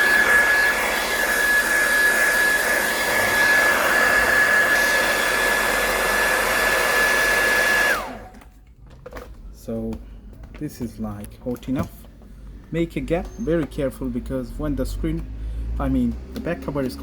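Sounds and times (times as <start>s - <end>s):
hair dryer running: 0.0s - 8.4s.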